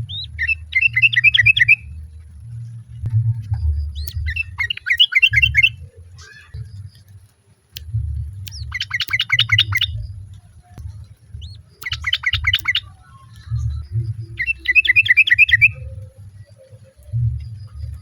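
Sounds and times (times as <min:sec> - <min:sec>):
low rumble: 0:00.0 - 0:18.0
bird chattering calls: 0:04.0 - 0:06.6, 0:08.5 - 0:09.9, 0:11.4 - 0:12.9, 0:14.3 - 0:15.8.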